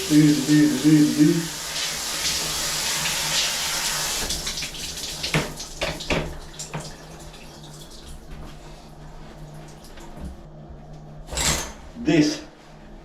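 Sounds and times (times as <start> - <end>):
shower water running: 0.0 - 10.4.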